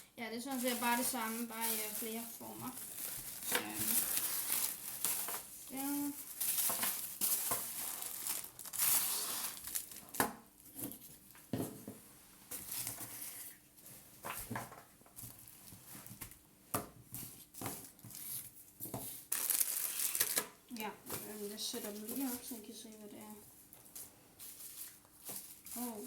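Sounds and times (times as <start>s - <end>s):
packaging crinkling and tearing: 0.5s - 10.2s, 19.2s - 20.6s.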